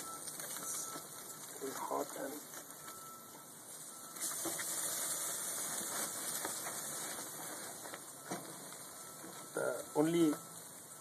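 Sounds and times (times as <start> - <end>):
food sizzling on a grill: 3.6 - 11.0.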